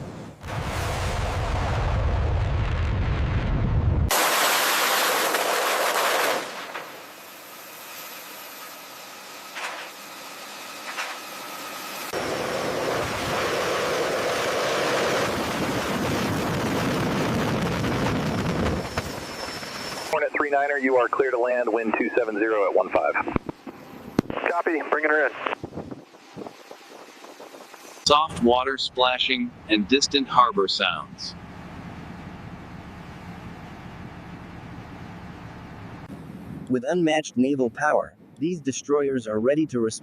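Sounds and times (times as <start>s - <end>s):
jet engines roaring: 3.7s - 37.4s.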